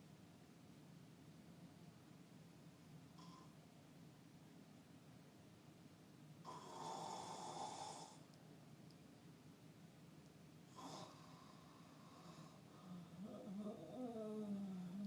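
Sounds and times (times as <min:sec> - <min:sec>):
person snoring faintly: 0:06.4 - 0:08.3, 0:10.7 - 0:15.0.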